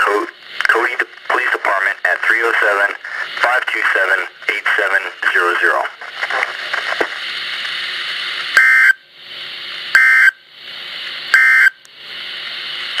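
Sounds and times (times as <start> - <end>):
radio hiss: 0.0 - 13.0
buzzing two-tone data bursts: 8.6 - 9.0, 9.9 - 10.4, 11.3 - 11.8.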